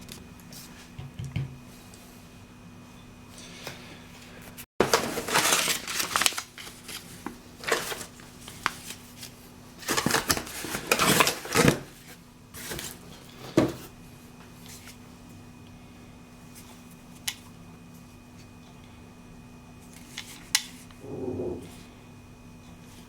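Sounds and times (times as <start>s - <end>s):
packaging rustling: 4.8s - 13.0s.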